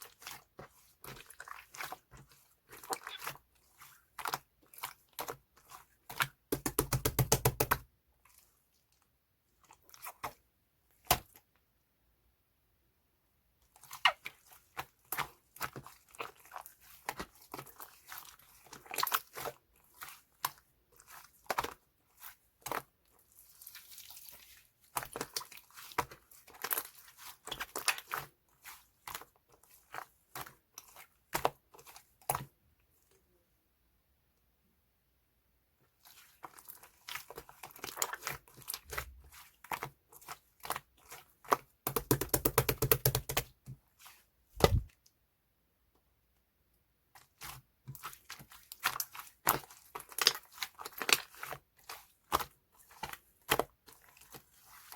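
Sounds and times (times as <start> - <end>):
slime squishing and popping: 41.6 - 43.5.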